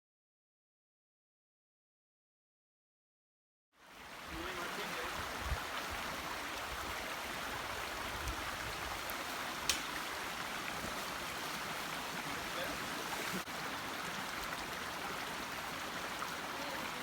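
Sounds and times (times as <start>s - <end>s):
mountain stream flowing: 3.8s - 17.0s.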